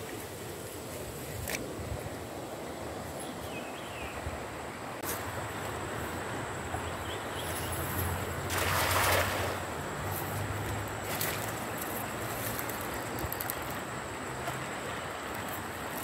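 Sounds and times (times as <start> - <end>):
flowing river water: 0.0 - 16.0
water splash: 8.4 - 9.8.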